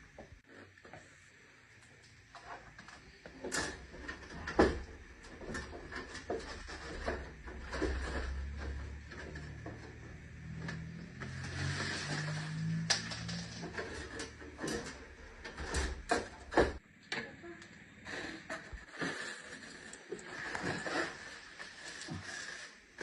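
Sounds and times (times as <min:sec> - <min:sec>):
tools and parts clattering: 0:03.4 - 0:16.8.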